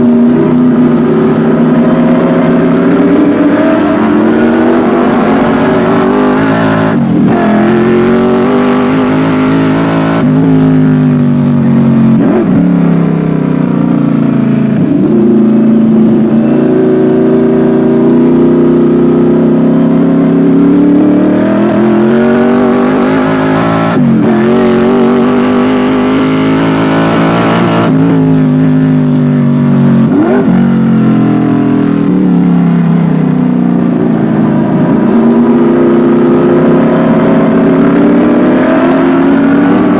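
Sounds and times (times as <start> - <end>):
racing engine revving: 0.0 - 33.2, 33.8 - 39.9.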